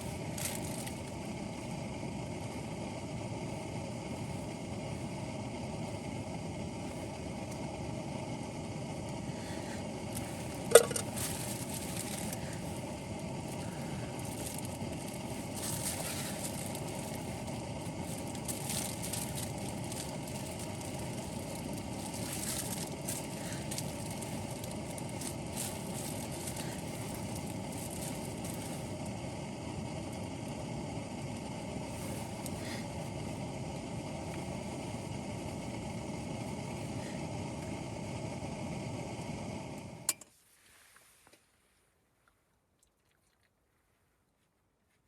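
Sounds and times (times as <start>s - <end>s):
faint crackling: 9.3s - 29.2s.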